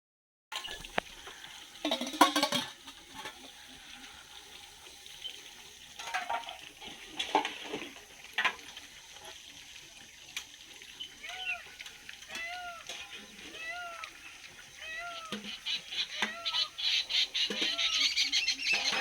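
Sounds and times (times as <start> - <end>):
peacock calling: 11.0 - 19.0.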